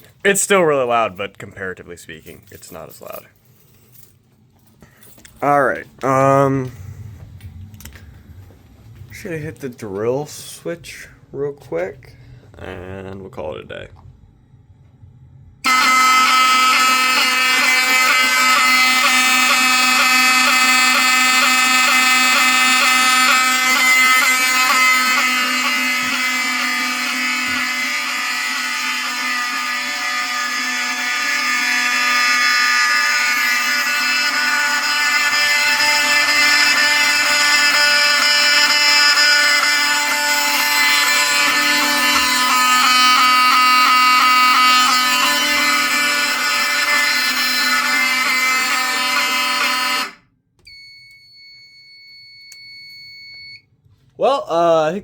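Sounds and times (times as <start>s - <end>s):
fire alarm horns blaring: 15.6s - 53.7s.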